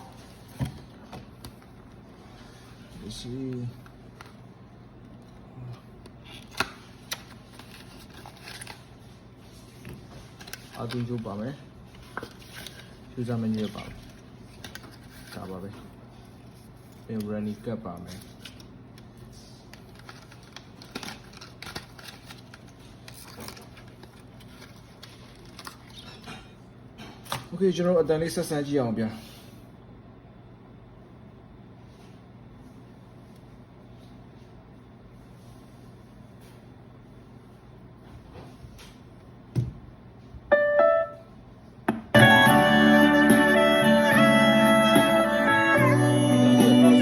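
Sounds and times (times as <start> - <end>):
hands handling box clicks and rustles: 10.3 - 15.7, 16.9 - 26.2
song with keyboard through speaker: 42.1 - 47.0.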